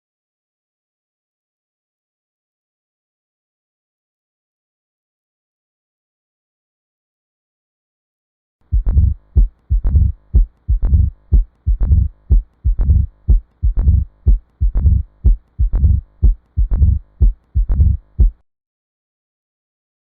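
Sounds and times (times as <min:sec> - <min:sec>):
heartbeat through stethoscope: 0:08.7 - 0:18.4.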